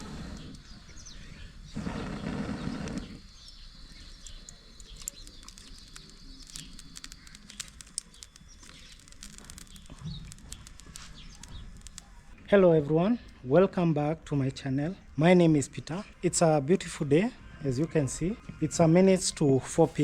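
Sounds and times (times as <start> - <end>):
small clicks: 0.0 - 0.8, 3.9 - 12.2
birds chirping: 0.0 - 20.0.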